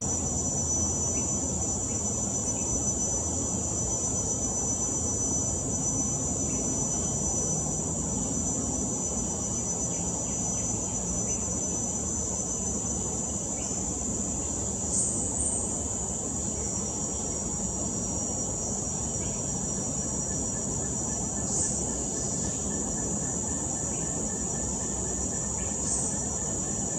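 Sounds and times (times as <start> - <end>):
insects droning: 0.0 - 26.9.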